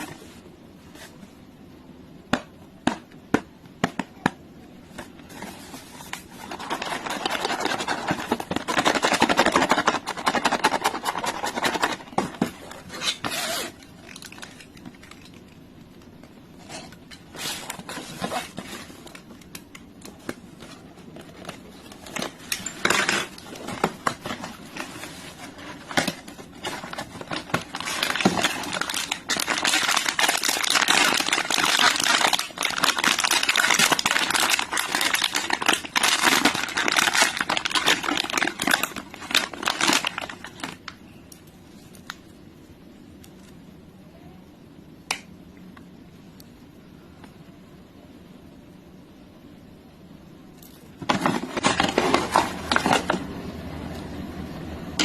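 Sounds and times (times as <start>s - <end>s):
packaging scraping and rustling: 4.9s - 15.5s, 16.6s - 40.8s, 50.9s - 53.3s.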